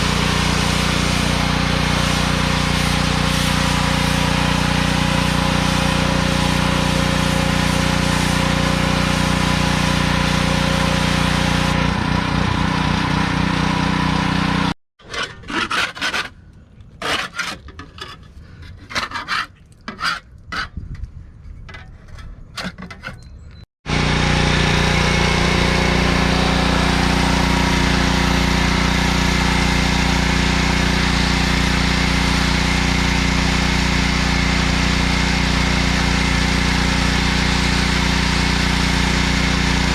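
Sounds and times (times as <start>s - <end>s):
pressure washer running: 0.0s - 14.8s, 23.8s - 39.9s
scraping barnacles off hull: 15.0s - 23.4s.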